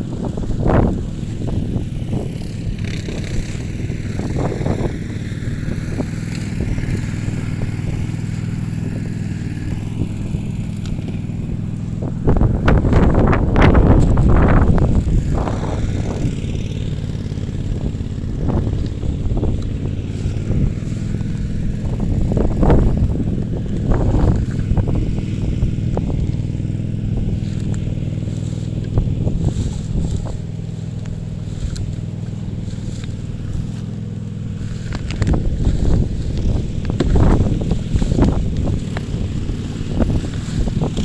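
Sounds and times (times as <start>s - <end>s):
small engine running: 0.0s - 41.0s
wind rumbling on microphone: 0.0s - 41.0s.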